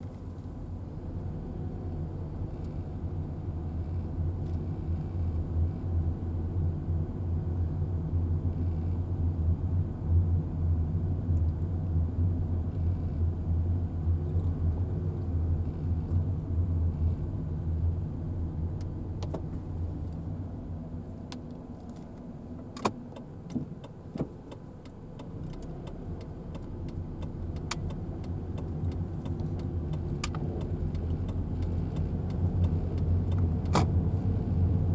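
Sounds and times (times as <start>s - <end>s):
car engine and tyres rumble: 0.0s - 34.9s
sharp ticks: 22.8s - 33.9s.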